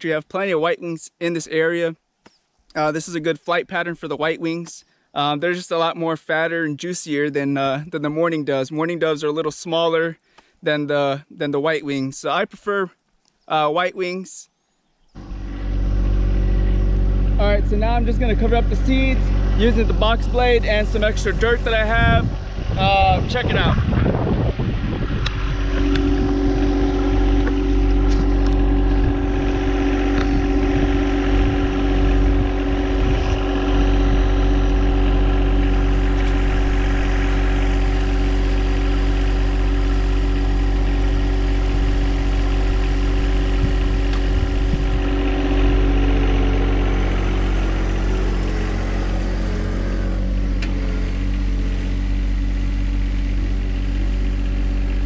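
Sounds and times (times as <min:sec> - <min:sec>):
tractor engine running under load: 0:15.2 - 0:55.0.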